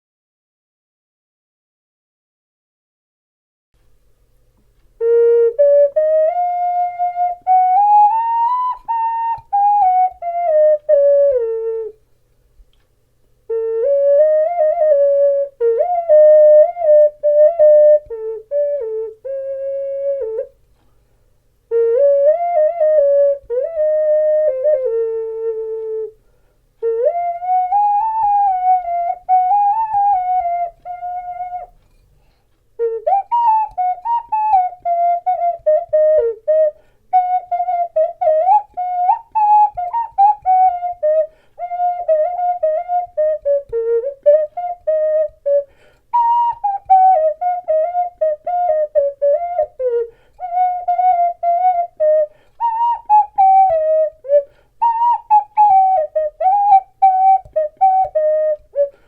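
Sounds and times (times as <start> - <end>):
ocarina melody: 4.8 - 12.8, 13.4 - 59.0
player breathing: 45.7 - 46.1.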